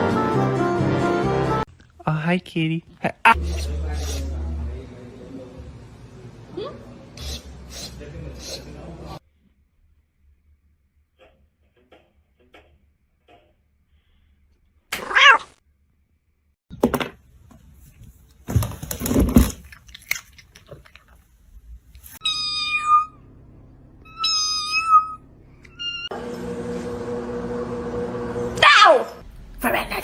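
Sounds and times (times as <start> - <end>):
cat meowing: 15.0 - 15.6, 22.2 - 23.2, 24.1 - 26.1.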